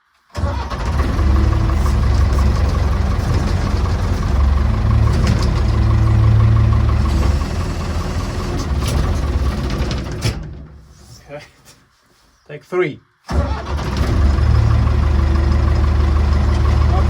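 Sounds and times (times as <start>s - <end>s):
backhoe engine running under load: 0.4s - 10.5s, 13.5s - 17.0s.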